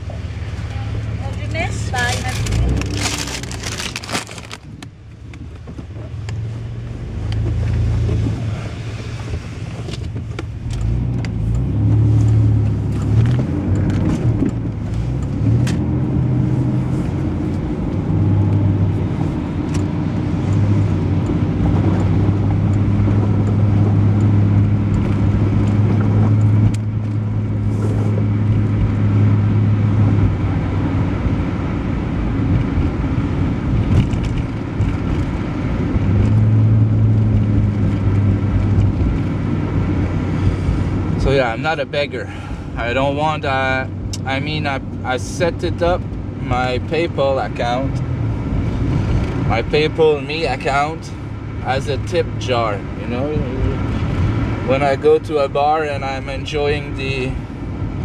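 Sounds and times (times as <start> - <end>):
road noise: 0.0 - 58.0
truck engine drone: 0.0 - 58.0.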